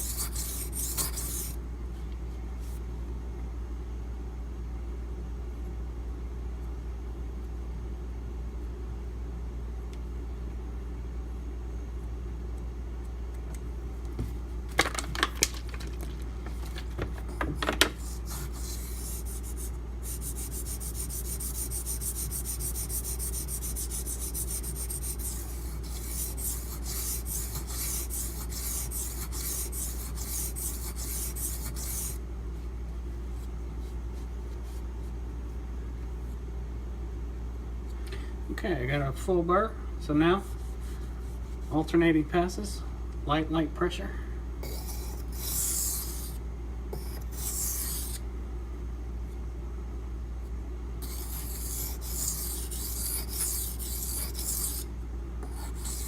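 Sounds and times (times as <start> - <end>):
knife scraping on whetstone: 51.0 - 54.8.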